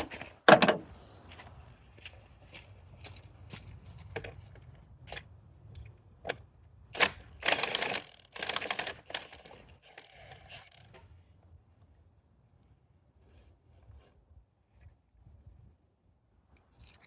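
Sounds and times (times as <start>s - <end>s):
rapid mechanical clicking: 7.0s - 10.9s.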